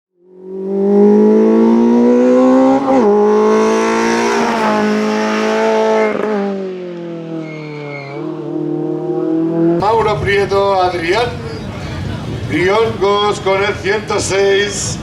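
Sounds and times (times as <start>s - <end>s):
rally car engine accelerating: 0.2s - 10.0s.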